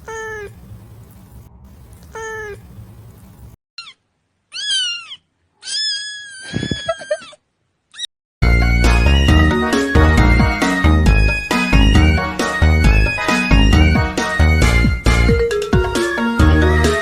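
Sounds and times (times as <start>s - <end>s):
cat meowing: 3.8s - 8.1s.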